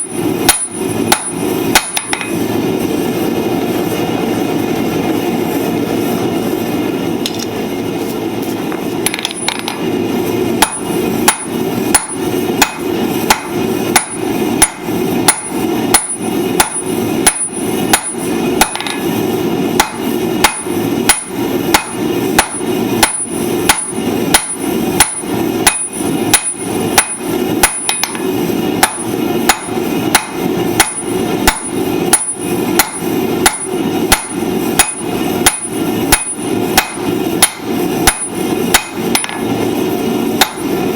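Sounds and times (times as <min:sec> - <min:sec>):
hammer striking anvil: 0:00.0 - 0:02.4, 0:09.0 - 0:09.8, 0:10.6 - 0:19.1, 0:19.8 - 0:39.5, 0:40.4 - 0:40.8.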